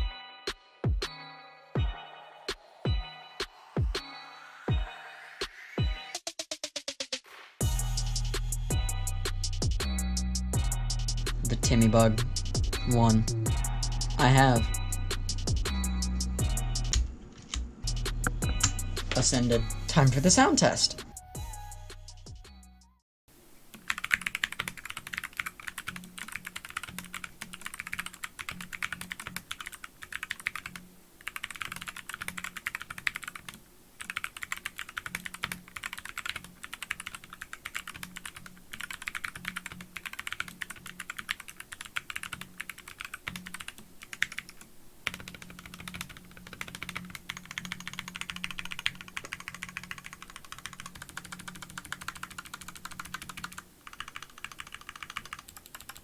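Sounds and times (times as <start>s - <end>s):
mechanical keyboard clacking: 23.8s - 56.0s.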